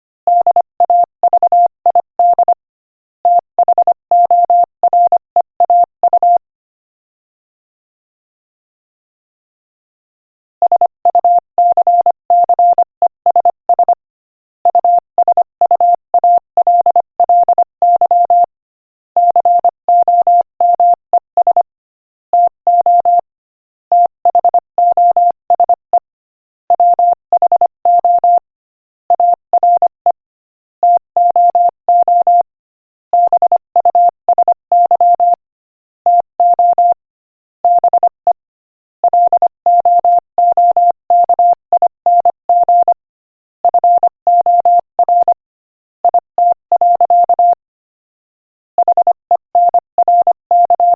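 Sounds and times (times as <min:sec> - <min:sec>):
morse code beeps: 0:00.3 - 0:02.6, 0:03.3 - 0:06.4, 0:10.7 - 0:14.0, 0:14.7 - 0:18.5, 0:19.2 - 0:21.7, 0:22.4 - 0:23.3, 0:24.0 - 0:26.1, 0:26.8 - 0:28.4, 0:29.1 - 0:30.2, 0:30.8 - 0:32.5, 0:33.2 - 0:35.4, 0:36.1 - 0:37.0, 0:37.6 - 0:38.4, 0:39.0 - 0:43.0, 0:43.6 - 0:45.4, 0:46.0 - 0:47.6, 0:48.8 - 0:50.9.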